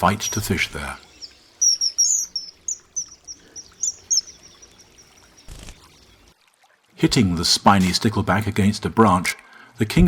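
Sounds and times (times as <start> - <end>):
kingfisher shrill calls: 0.0 - 5.8.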